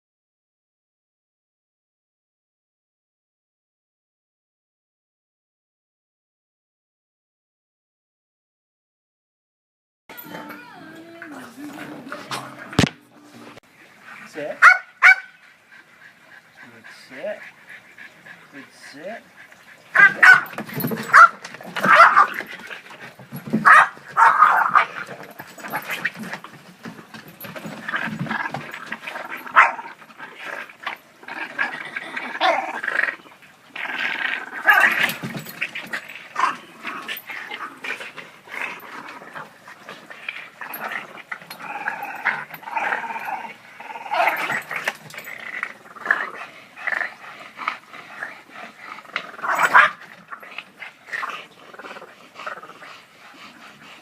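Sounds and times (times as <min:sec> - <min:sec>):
dogs growling and snarling: 0:10.2 - 0:14.6, 0:15.4 - 0:54.0.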